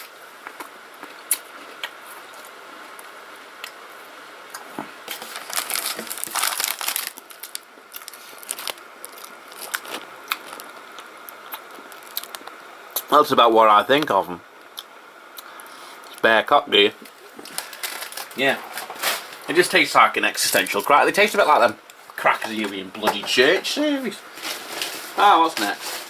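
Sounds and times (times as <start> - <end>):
cracker being chewed: 0.4 - 3.8, 4.5 - 13.1
cracker packet crinkling: 5.1 - 13.1, 17.0 - 21.5.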